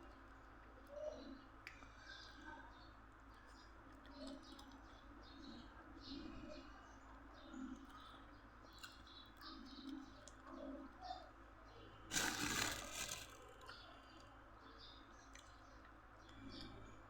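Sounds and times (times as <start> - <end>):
close-up eating sounds: 0.2 - 11.3, 12.1 - 14.4.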